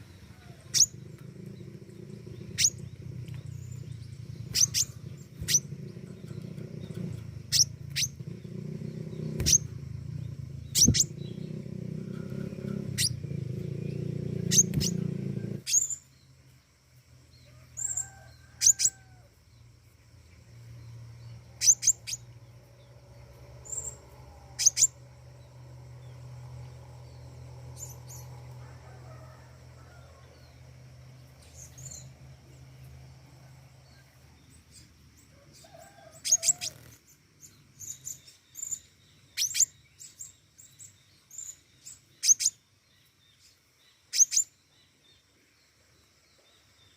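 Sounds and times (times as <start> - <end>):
low rumble: 0.0 - 15.6.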